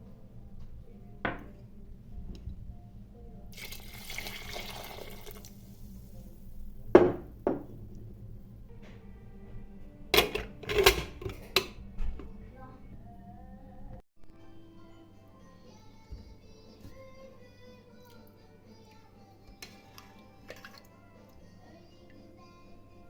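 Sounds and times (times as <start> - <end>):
water running: 3.5 - 8.1.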